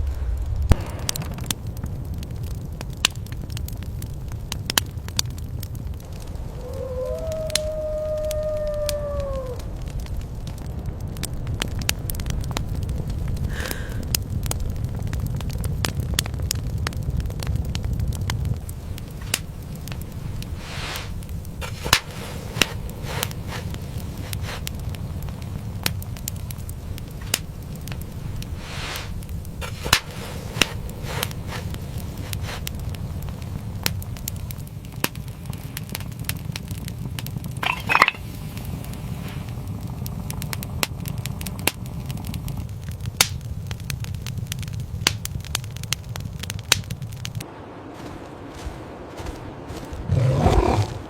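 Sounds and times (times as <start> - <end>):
low rumble: 0.0 - 27.0
sharp crackles and snaps: 0.0 - 51.0.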